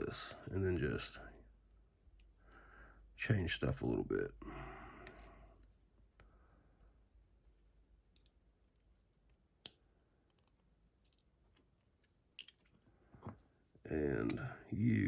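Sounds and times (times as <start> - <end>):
small metal lock parts clicking: 8.1 - 12.9.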